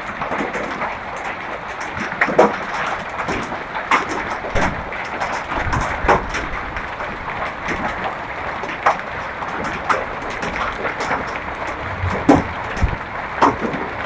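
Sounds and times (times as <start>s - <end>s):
hail and rain falling: 0.0s - 14.0s
hailstones cracking on hard surfaces: 0.0s - 14.0s
low rumble: 9.4s - 14.0s.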